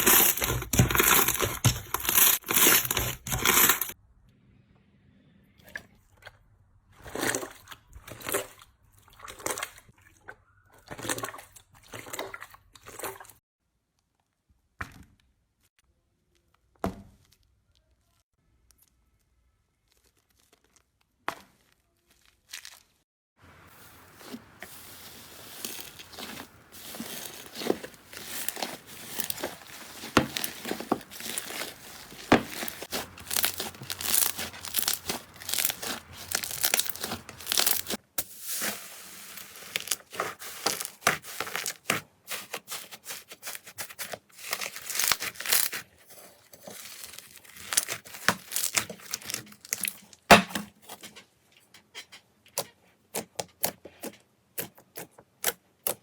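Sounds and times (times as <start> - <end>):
slime crackling and popping: 0.0 - 4.0, 24.2 - 50.4
slime tearing: 0.0 - 4.0, 24.0 - 50.4.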